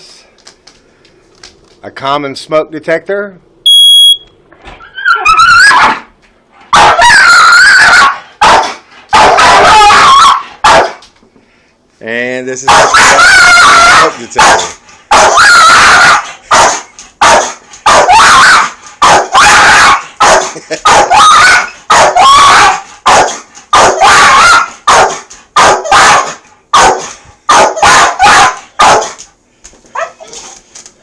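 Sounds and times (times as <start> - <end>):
dog barking loudly: 5.1 - 6.1, 6.7 - 11.0, 12.6 - 29.2.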